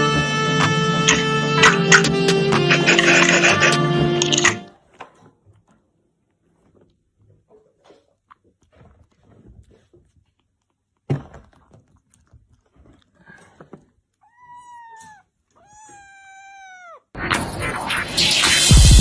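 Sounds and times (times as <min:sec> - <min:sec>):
loud music: 0:00.0 - 0:04.6, 0:17.2 - 0:19.0
cat meowing: 0:14.2 - 0:17.2.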